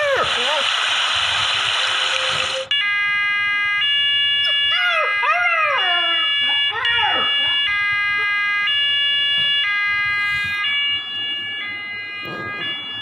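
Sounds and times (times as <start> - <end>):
puppy howling: 4.5 - 7.7
steady electronic tones: 6.2 - 13.0.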